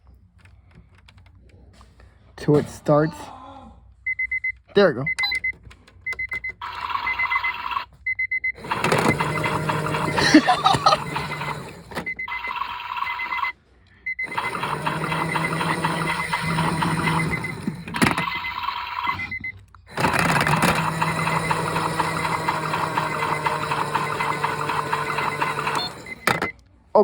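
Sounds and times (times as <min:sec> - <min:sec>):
electronic timer beeping rapidly: 0:04.1 - 0:05.5, 0:06.2 - 0:13.5, 0:14.1 - 0:26.5
toy motor humming: 0:08.6 - 0:13.4, 0:14.2 - 0:26.5.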